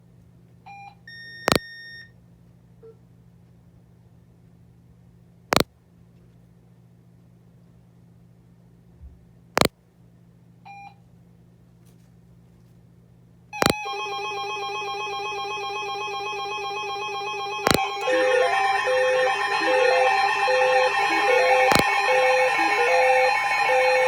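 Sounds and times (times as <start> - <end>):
sharp clicks: 13.6 - 13.8
loud steady electronic alert tone: 13.6 - 24.0
low pulsing beep: 14.8 - 24.0
short beep: 17.5 - 24.0.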